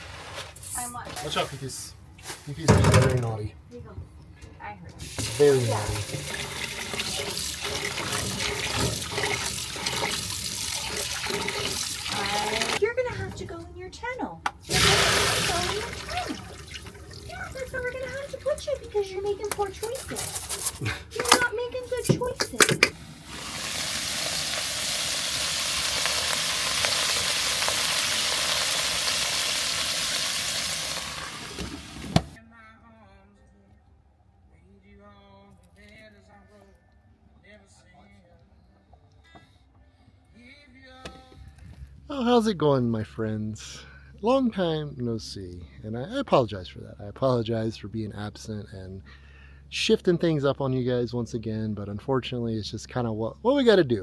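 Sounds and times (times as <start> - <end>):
rush of running water: 5.1 - 12.8, 23.2 - 32.4.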